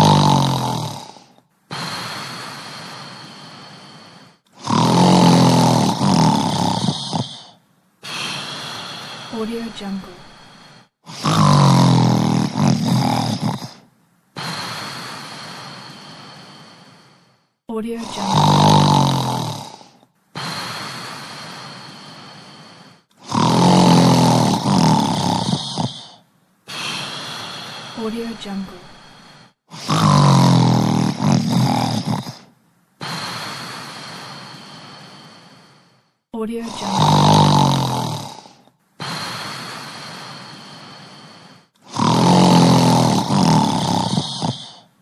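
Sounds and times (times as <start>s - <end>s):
person snoring: 0.0s - 45.0s
long breathy breath: 0.8s - 4.7s, 5.9s - 11.7s, 14.4s - 45.0s.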